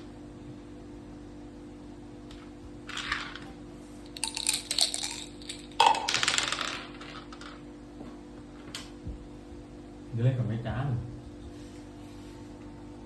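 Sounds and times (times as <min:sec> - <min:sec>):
dice and pieces clattering on board: 0:02.8 - 0:07.6.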